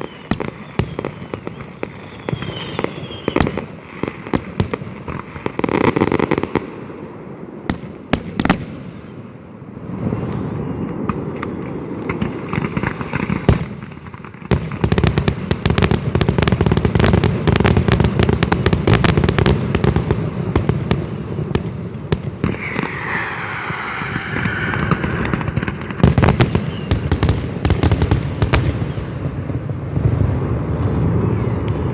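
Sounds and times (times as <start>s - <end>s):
falling firework whistle: 0.0s - 4.1s, 9.8s - 14.1s, 22.4s - 27.9s, 30.0s - 31.9s
fireworks banging and crackling: 0.0s - 31.9s.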